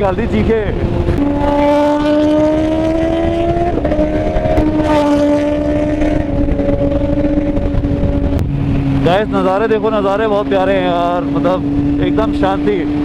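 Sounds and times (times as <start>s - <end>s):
motorcycle engine at high revs: 0.0s - 13.0s.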